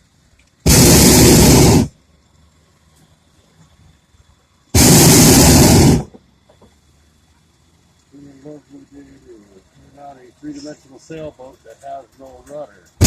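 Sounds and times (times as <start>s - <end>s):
propane burner blast: 0.6s - 2.0s, 4.7s - 6.5s.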